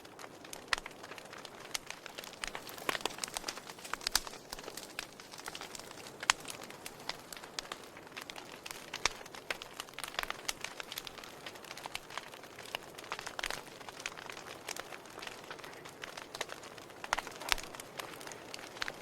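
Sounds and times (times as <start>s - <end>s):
soft hiss: 0.0s - 12.0s
wood fire crackling: 0.0s - 19.0s.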